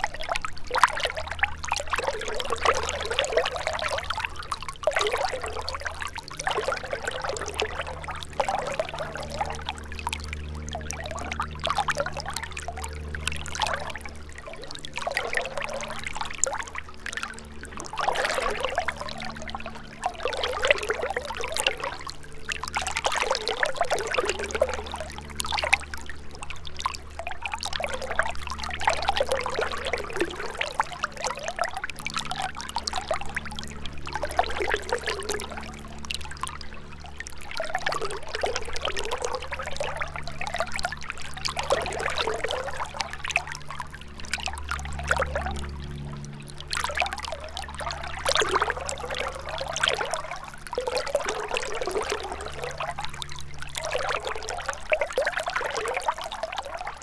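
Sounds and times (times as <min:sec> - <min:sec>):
steady low hum: 0:00.0 - 0:57.0
river gurgling over stones: 0:17.8 - 0:25.8.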